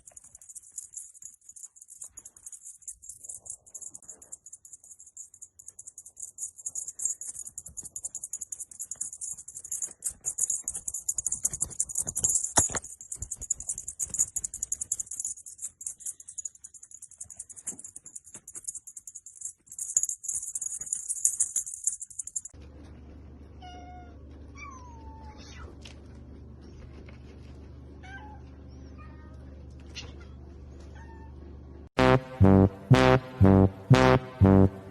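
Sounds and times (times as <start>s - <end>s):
fast high-pitched rattling: 0.0s - 22.6s.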